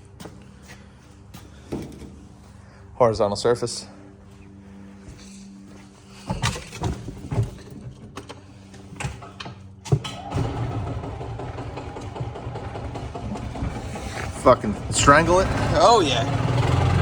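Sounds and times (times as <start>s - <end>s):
golf cart running: 5.3s - 17.0s.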